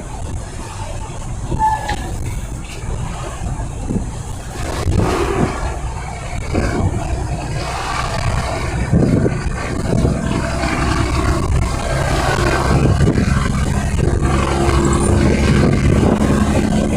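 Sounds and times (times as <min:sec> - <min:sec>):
engine rough rumble: 0:00.0 - 0:16.9
higher engine note: 0:04.6 - 0:16.9.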